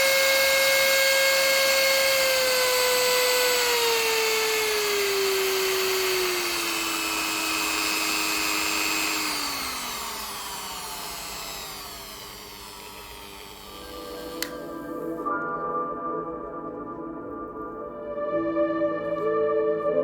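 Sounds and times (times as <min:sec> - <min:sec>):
rotary tool motor whining: 0:00.0 - 0:14.9.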